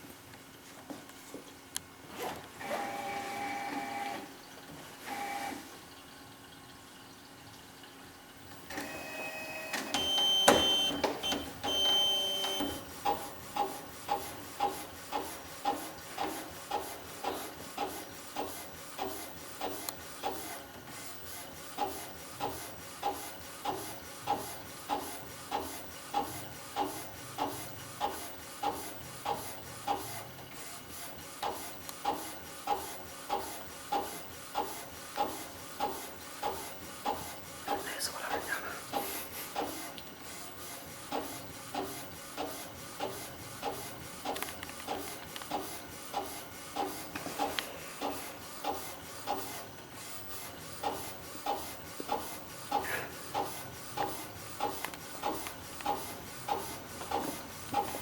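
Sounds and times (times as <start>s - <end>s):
printer motor whine and clatter: 2.6s - 5.6s, 8.5s - 37.9s, 38.8s - 58.0s.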